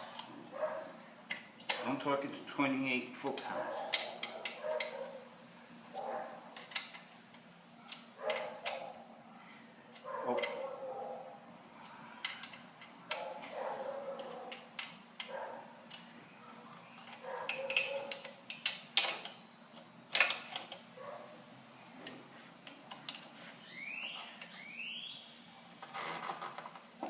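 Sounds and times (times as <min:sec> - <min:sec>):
hand tools clicking on bolts: 0:03.3 - 0:05.0, 0:07.9 - 0:08.9, 0:17.0 - 0:19.4, 0:22.1 - 0:23.3
short rising squeaks: 0:23.5 - 0:25.3.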